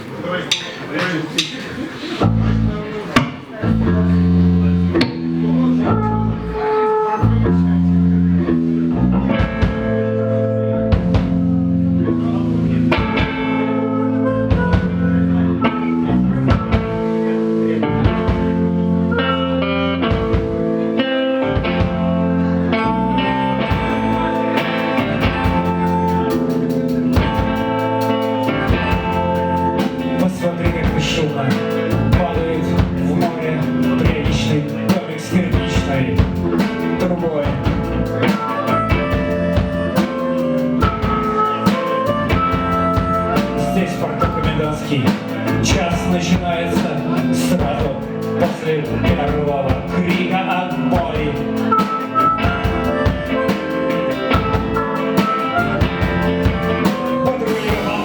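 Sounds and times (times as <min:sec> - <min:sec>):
live rock band playing: 0:03.6 - 0:58.0.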